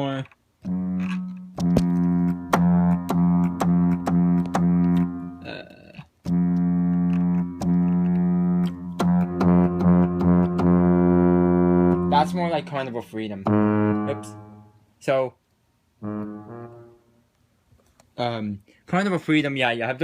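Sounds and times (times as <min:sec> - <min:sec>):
synthesized ship's horn blasts: 0:00.6 - 0:05.6, 0:06.3 - 0:14.9, 0:16.0 - 0:17.2.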